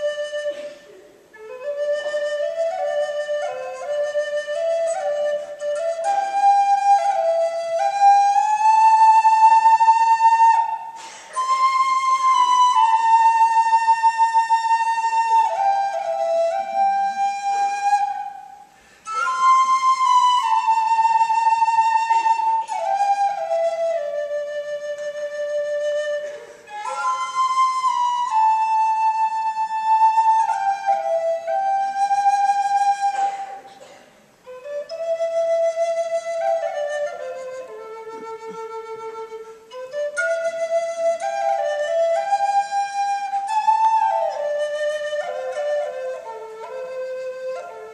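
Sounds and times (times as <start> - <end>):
flute playing slow melody: 0.0 - 47.9
breaths between phrases: 18.8 - 19.0.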